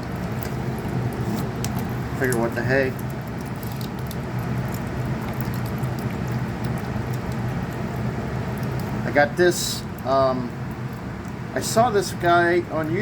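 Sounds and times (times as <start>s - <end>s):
water trickling and dripping: 0.0s - 9.1s, 12.7s - 13.0s
electric fans humming: 0.0s - 13.0s.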